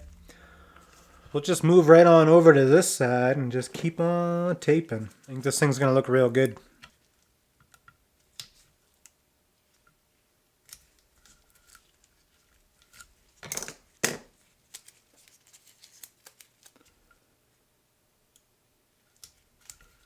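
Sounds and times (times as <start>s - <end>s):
tape being handled: 14.3s - 17.2s.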